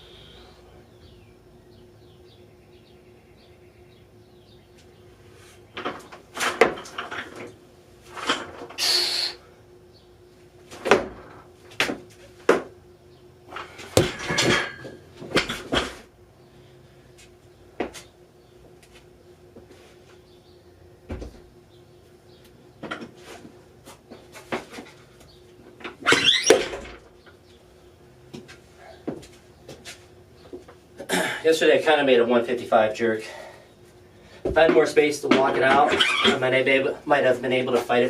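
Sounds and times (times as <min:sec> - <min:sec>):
faint steady hum: 0:00.0 - 0:38.0
barbell plates clattering: 0:13.6 - 0:16.0.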